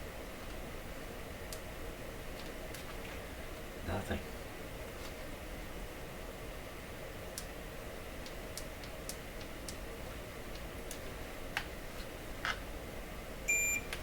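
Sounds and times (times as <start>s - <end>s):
steady low hum: 0.0s - 14.0s
short electronic beep: 13.5s - 13.9s.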